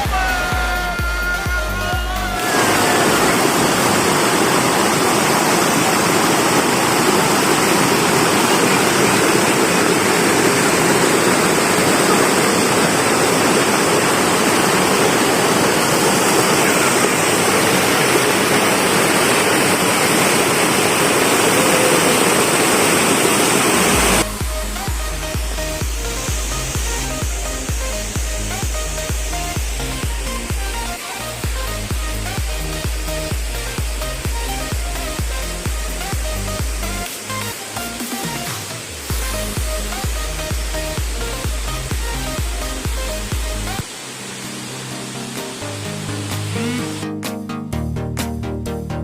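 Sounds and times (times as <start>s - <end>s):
background music: 0.0s - 3.9s, 24.0s - 49.0s
waterfall rushing: 0.0s - 47.1s.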